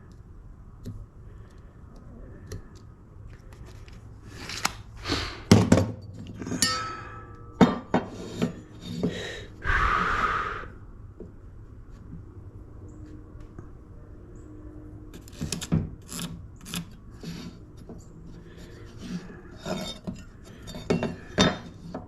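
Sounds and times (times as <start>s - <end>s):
tools clinking and knocking: 5.7s - 9.1s, 19.7s - 22.0s.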